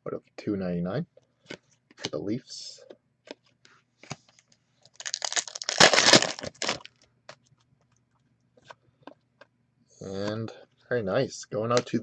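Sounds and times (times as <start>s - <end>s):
plastic packaging crackling and rustling: 4.2s - 7.1s.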